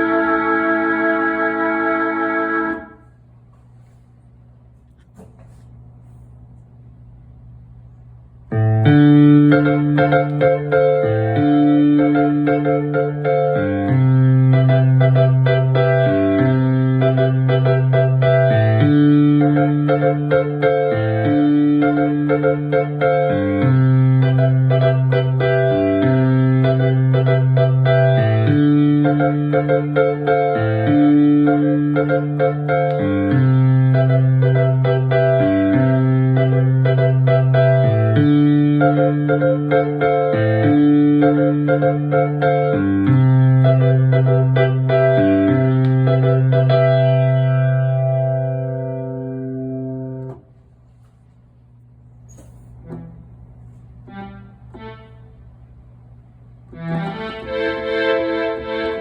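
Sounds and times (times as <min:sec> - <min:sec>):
keyboard sustained chords: 0:00.0 - 0:03.2, 0:08.5 - 0:50.4, 0:52.8 - 0:55.8, 0:56.7 - 0:59.0
faint low hum: 0:00.0 - 0:59.0
keyboard held low notes: 0:51.8 - 0:59.0.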